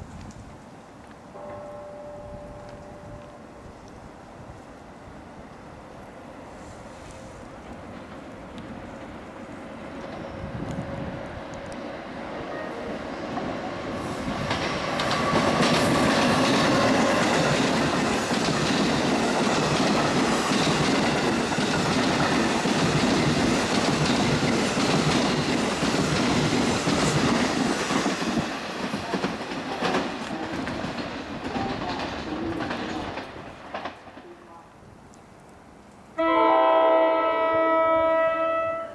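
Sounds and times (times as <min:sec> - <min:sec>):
train passing at speed: 0:00.7 - 0:34.6, 0:36.2 - 0:38.9
wheels clattering over rail joints: 0:14.3 - 0:34.3.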